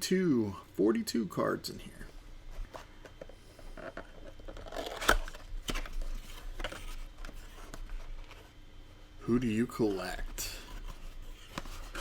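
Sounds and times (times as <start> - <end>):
packaging rustling and crinkling: 2.6 - 8.6.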